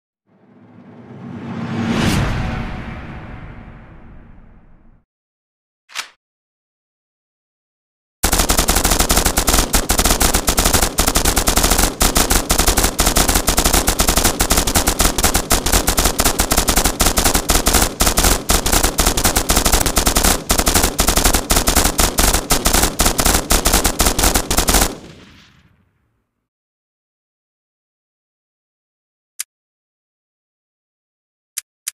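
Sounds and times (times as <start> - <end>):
machine gun firing full-auto: 8.2 - 25.8.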